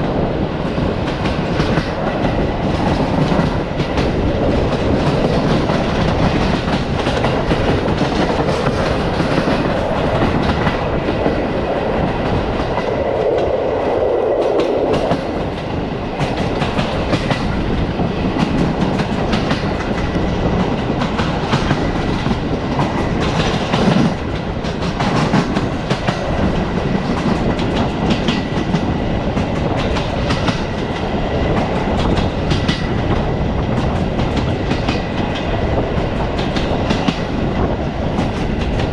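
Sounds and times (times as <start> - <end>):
train rolling on track: 0.0 - 38.9
wheels clicking over rail joints: 0.6 - 13.6, 14.4 - 38.9.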